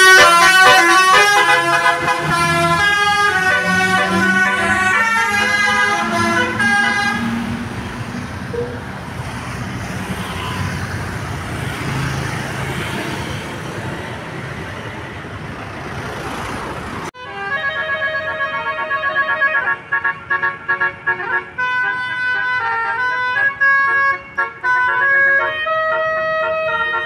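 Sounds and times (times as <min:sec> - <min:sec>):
multi-tone musical air horn tune: 0:00.0 - 0:07.4
bus engine and road noise: 0:00.0 - 0:27.0
traffic: 0:00.0 - 0:27.0.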